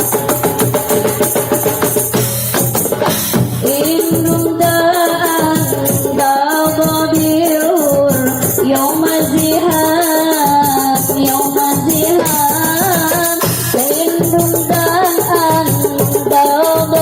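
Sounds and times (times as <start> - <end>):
hand drums: 0.0 - 17.0
jingling tambourines: 0.0 - 17.0
woman singing ornamented notes: 3.6 - 17.0.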